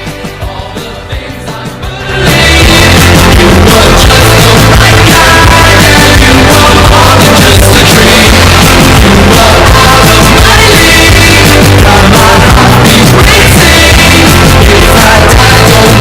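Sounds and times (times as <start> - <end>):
loud music with singing: 0.0 - 16.0.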